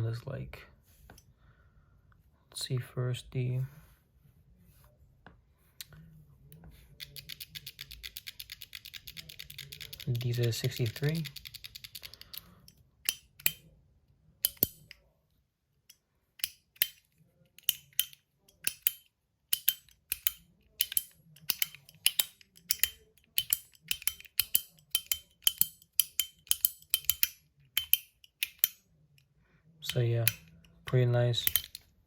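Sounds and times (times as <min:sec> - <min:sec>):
plastic fidget clicking: 0:07.0 - 0:13.7, 0:14.4 - 0:15.0, 0:16.4 - 0:29.3, 0:29.9 - 0:31.9.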